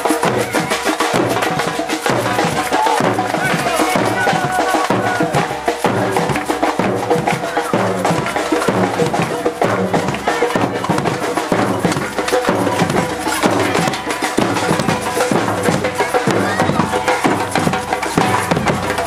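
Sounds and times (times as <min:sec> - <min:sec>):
bass drum beats: 0:00.0 - 0:19.0
percussion ensemble drumming: 0:00.0 - 0:19.0.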